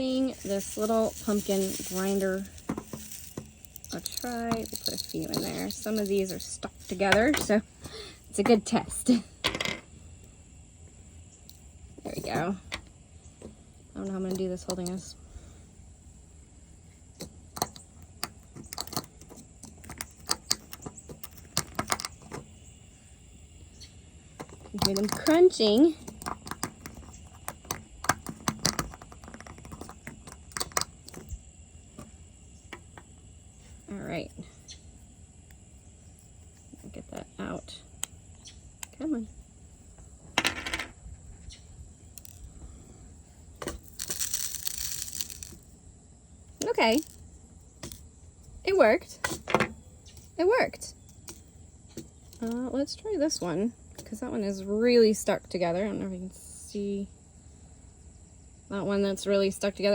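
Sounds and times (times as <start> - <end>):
hand grinder crunching: 0.0 - 7.3, 43.8 - 45.7.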